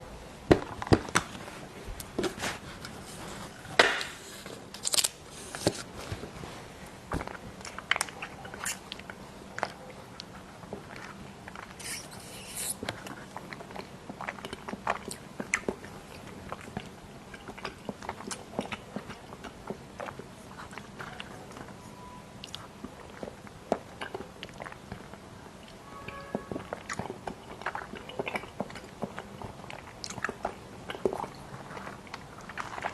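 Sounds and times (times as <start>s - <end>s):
person chewing sweets: 7.2s - 32.9s.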